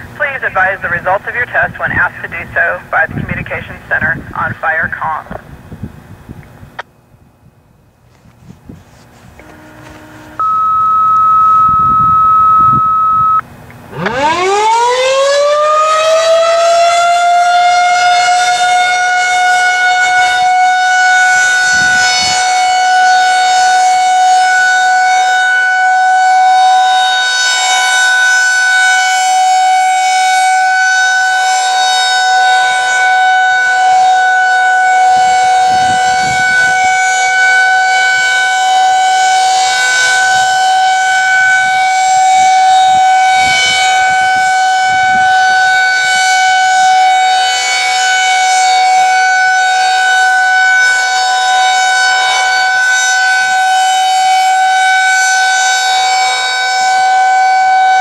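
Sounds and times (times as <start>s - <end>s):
warning siren winding up: 9.4s - 58.0s
steady beep tone: 10.4s - 13.4s.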